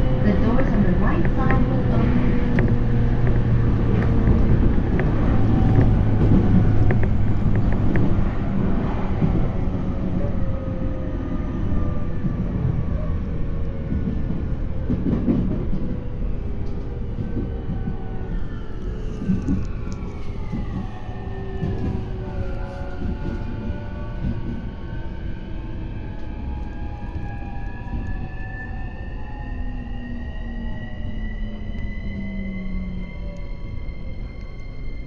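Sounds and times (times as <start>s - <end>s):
train wheels rumbling on track: 0.0s - 35.0s.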